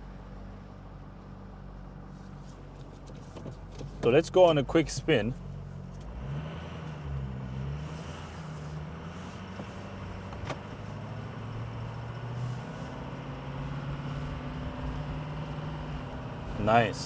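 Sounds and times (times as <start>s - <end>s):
diesel truck engine running: 4.0s - 17.0s.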